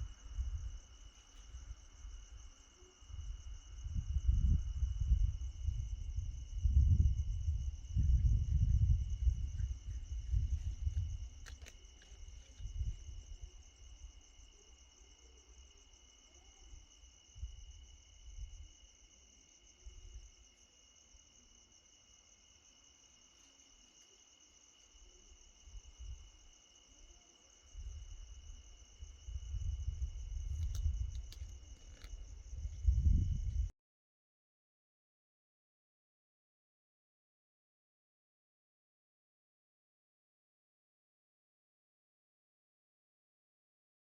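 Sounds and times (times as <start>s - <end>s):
crickets droning: 0.0s - 33.7s
insects chirring: 0.0s - 33.7s
sharp clicks: 11.4s - 12.1s.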